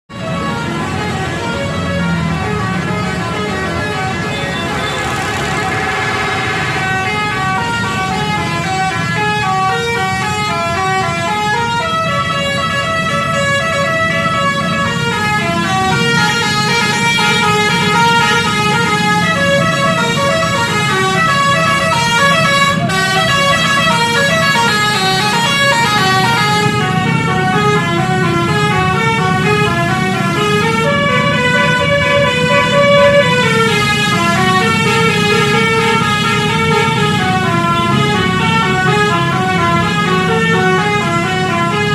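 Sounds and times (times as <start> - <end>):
musical air horn melody: 1.0 - 41.9.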